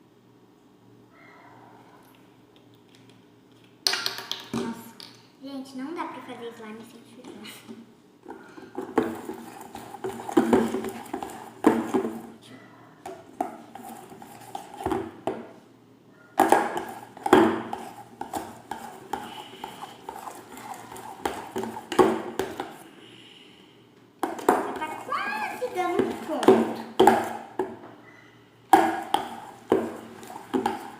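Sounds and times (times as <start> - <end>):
spoon stirring slime: 8.3 - 12.3, 13.0 - 15.0, 16.4 - 22.9, 24.2 - 27.6, 28.8 - 30.9.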